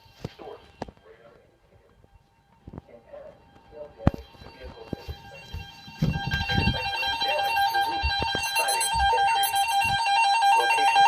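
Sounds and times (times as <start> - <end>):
warbling electronic alert tone: 3.8 - 11.0.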